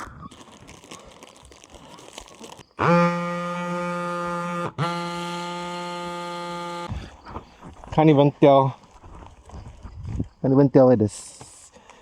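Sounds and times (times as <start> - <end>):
electric tyre pump running: 4.6 - 6.9.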